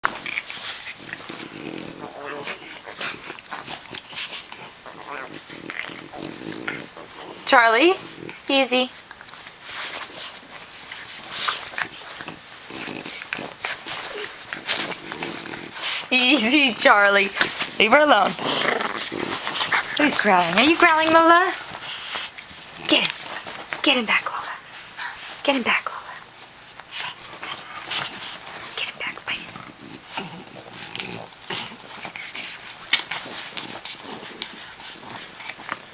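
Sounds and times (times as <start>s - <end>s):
dog snorting and huffing: 0.0s - 23.8s, 26.9s - 35.9s.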